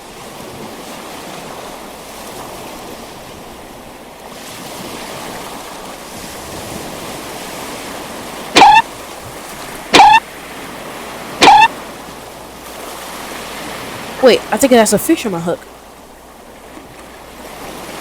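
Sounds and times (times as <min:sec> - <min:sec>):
high-pitched chirps: 0:08.6 - 0:08.8, 0:10.0 - 0:10.2, 0:11.4 - 0:11.7.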